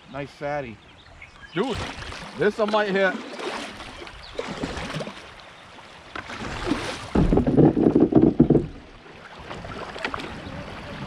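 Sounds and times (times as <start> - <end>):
paddle knocking against hull: 6.1 - 8.9.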